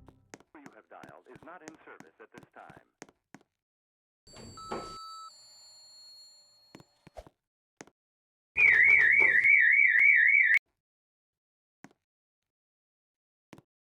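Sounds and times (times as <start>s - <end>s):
elevator alarm warbling tone: 8.6s - 10.6s.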